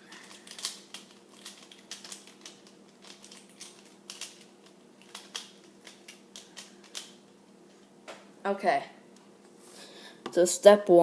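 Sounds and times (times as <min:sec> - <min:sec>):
plastic puzzle clicking as twisted: 0:00.1 - 0:07.2.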